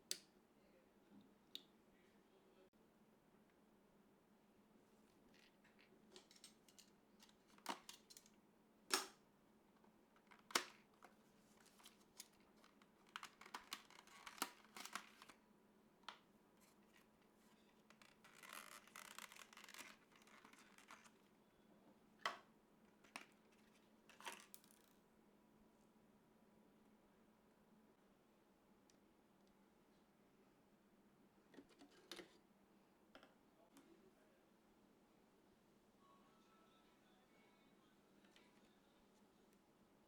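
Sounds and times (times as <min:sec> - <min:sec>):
packaging rustling: 0:11.6 - 0:15.4, 0:16.8 - 0:21.3, 0:23.1 - 0:24.9.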